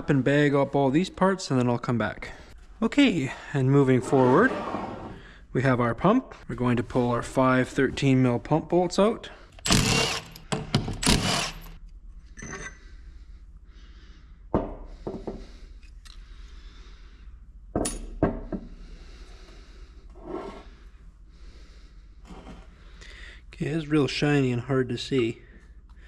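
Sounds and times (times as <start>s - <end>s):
metal scraping: 3.9s - 5.2s.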